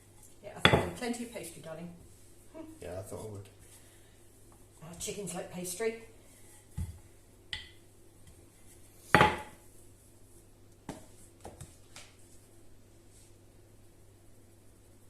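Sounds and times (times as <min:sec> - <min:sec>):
dish knocking on worktop: 0:00.6 - 0:01.0, 0:09.2 - 0:09.5.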